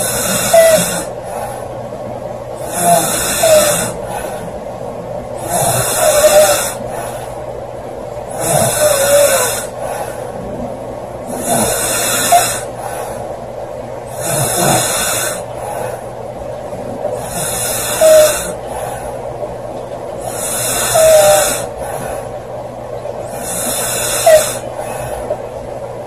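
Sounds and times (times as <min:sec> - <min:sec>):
girl snoring loudly: 0:00.0 - 0:01.1, 0:02.6 - 0:04.0, 0:05.4 - 0:06.8, 0:08.3 - 0:09.8, 0:11.3 - 0:12.8, 0:14.1 - 0:15.5, 0:17.2 - 0:18.6, 0:20.2 - 0:21.7, 0:23.3 - 0:24.9.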